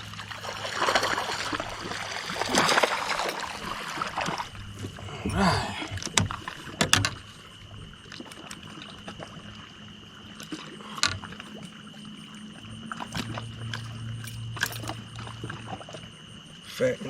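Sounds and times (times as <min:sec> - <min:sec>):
small knocks and clicks: 0:06.0 - 0:07.3, 0:10.4 - 0:11.7.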